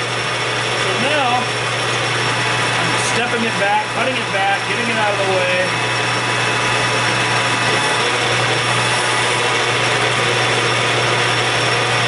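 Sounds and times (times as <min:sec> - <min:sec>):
lathe machine hum: 0:00.0 - 0:12.0.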